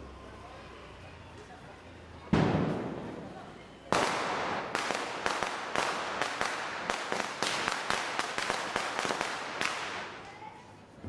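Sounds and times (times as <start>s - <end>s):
firecrackers banging: 2.2s - 11.0s.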